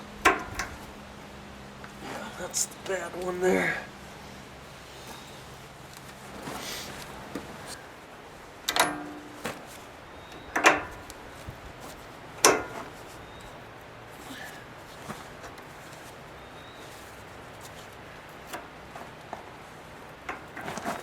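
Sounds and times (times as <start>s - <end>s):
metallic coupler clacks: 0.2s - 0.8s, 8.6s - 9.6s, 10.3s - 11.2s, 12.4s - 12.9s.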